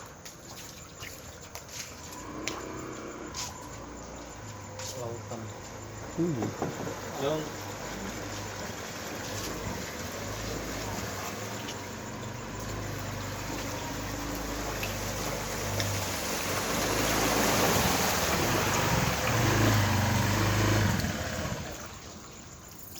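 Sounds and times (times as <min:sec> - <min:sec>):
water rushing and splashing: 0:00.0 - 0:22.9
low engine hum: 0:00.9 - 0:22.7.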